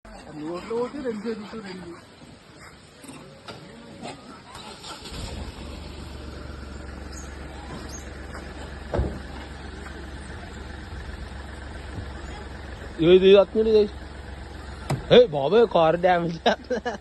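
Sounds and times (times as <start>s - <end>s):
car engine idling: 0.1s - 17.0s
thump: 8.9s - 9.3s, 14.8s - 15.1s.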